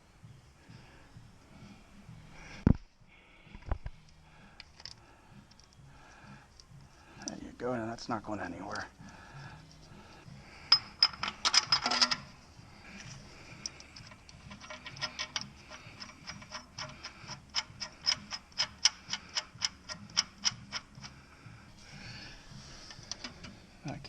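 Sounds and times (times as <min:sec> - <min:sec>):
ratchet wrench clicking: 0:10.7 - 0:12.3, 0:13.6 - 0:21.2.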